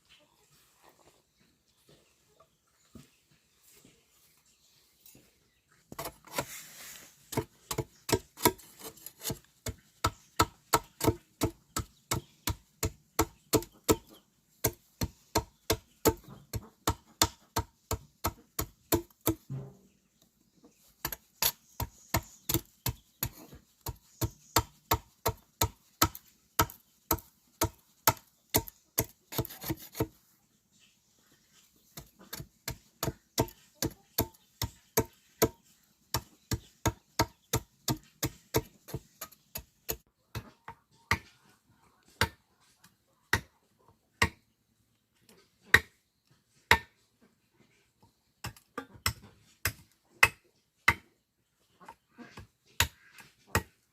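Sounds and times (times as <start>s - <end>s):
rapid chopping strokes: 21.0s - 30.2s.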